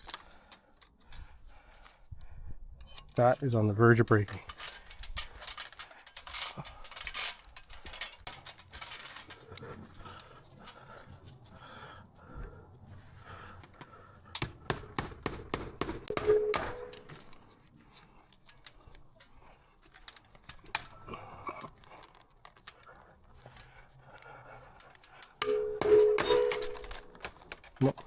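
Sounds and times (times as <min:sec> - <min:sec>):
handling noises: 0:02.8 - 0:28.0
sharp clicks and rattles: 0:04.2 - 0:10.8, 0:13.6 - 0:28.0.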